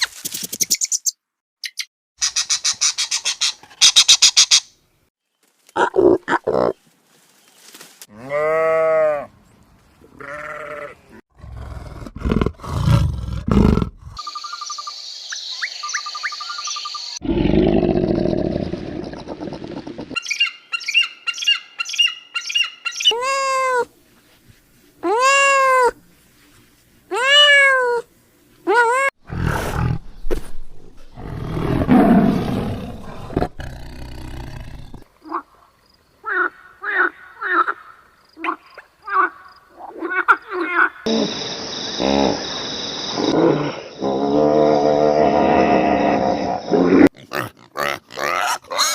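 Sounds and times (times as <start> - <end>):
animal calls: 46.4 - 48.9.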